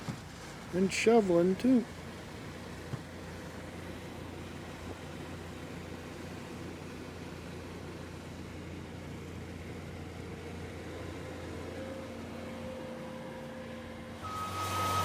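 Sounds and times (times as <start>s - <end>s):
vehicle engine humming: 0.0s - 15.0s
reversing beeper: 11.8s - 15.0s.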